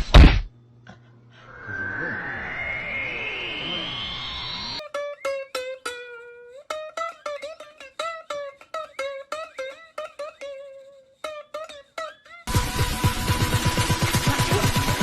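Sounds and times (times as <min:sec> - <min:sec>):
sweeping gliding tones: 0:01.4 - 0:04.8
plucked string melody: 0:04.8 - 0:15.0.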